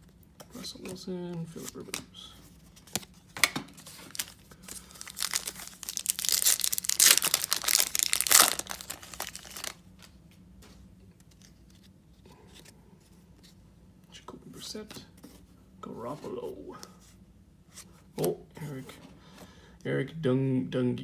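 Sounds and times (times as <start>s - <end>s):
wrapper being torn and crinkled: 3.7s - 10.1s.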